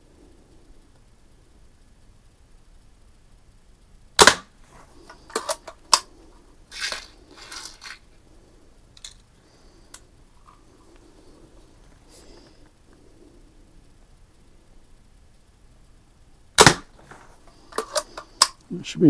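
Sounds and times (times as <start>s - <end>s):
air rifle shot crack: 4.2s - 6.2s, 16.6s - 18.6s
quick mechanical clicks: 4.2s - 8.0s, 16.6s - 18.7s.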